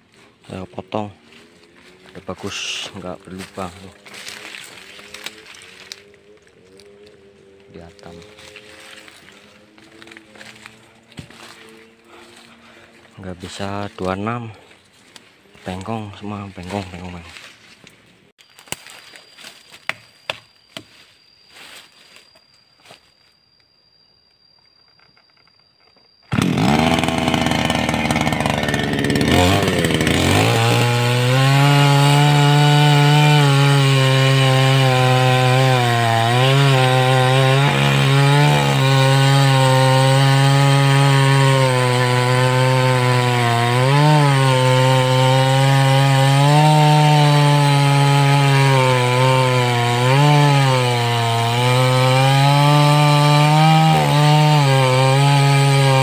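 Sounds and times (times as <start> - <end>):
chainsaw sawing through log: 0.1 - 14.7, 26.3 - 56.0.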